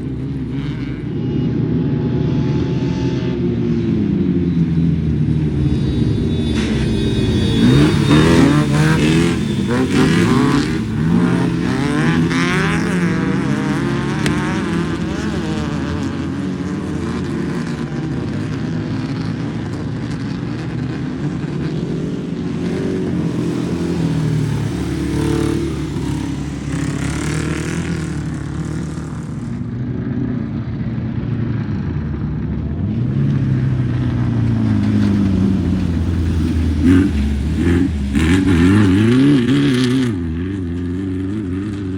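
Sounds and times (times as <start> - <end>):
race vehicle engines revving past: 0.0 - 29.7, 33.3 - 41.9.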